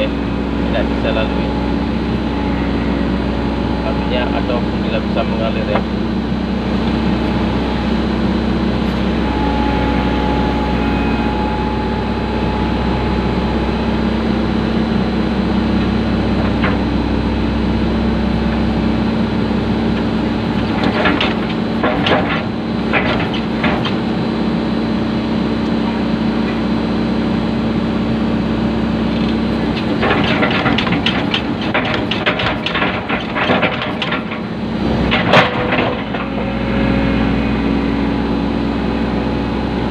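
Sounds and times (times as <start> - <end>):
excavator diesel engine rumbling: 0.0 - 39.9
knocks and clatters: 20.6 - 24.0, 29.6 - 36.4.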